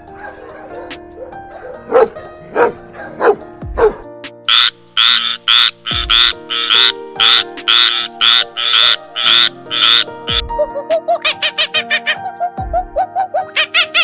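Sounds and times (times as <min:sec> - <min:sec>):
background music with held notes: 0:00.0 - 0:14.0
dog bark: 0:00.1 - 0:04.0
frog croaking: 0:04.5 - 0:10.4.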